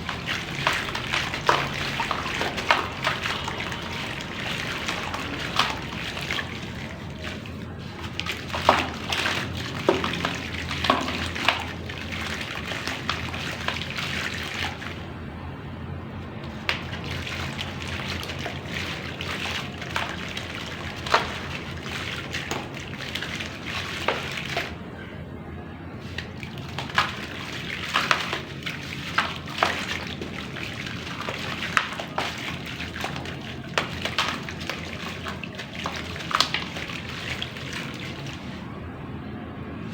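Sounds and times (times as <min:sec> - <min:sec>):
clay plopping into water: 0:00.0 - 0:15.0.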